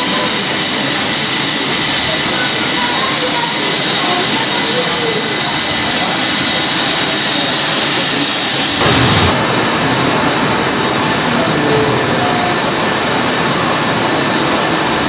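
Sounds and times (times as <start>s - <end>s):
jet engine rushing hiss: 6.3s - 15.0s
jet engine surge rumble: 8.6s - 13.0s.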